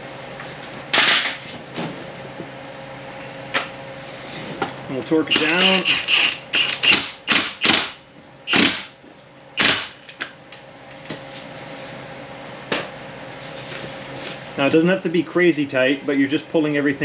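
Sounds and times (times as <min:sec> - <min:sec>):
wrench ratcheting: 0:05.3 - 0:07.8, 0:08.5 - 0:08.8, 0:09.6 - 0:09.9.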